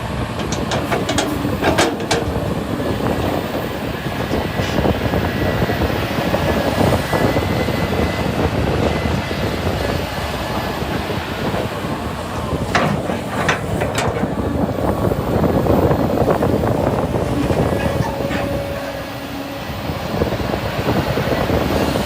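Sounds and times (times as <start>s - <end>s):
excavator diesel rumble: 0.0s - 22.0s
sharp metallic clanks: 0.4s - 3.4s, 12.7s - 14.6s.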